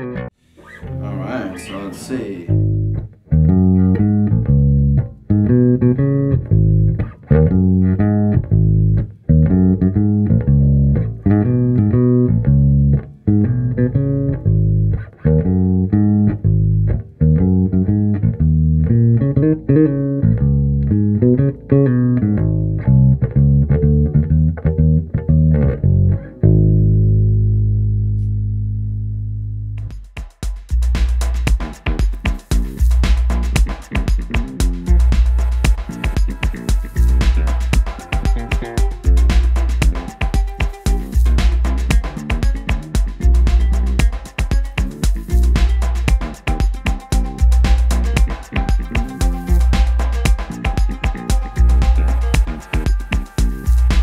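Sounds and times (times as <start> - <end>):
plucked bass guitar notes: 0.0 - 30.0, 30.7 - 54.0.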